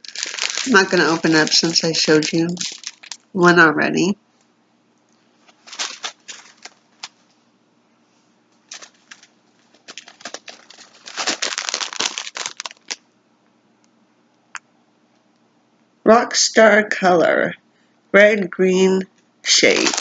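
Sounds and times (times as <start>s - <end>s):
packaging crinkling: 0.0s - 3.4s, 5.4s - 7.3s, 8.6s - 13.0s, 19.5s - 20.0s.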